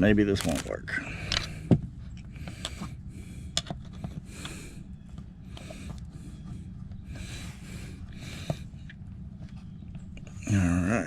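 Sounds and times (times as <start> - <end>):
hard breathing through nose: 2.3 - 8.9.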